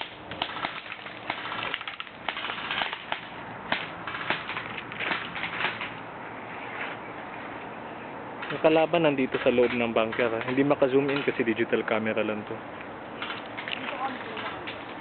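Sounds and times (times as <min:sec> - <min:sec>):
airsoft gunfire: 0:00.0 - 0:06.0.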